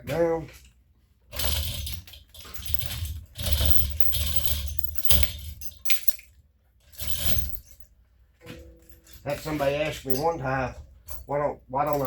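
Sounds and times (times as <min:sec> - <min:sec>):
hoist chain rattling: 0:01.3 - 0:06.2, 0:06.9 - 0:07.9, 0:08.8 - 0:12.0.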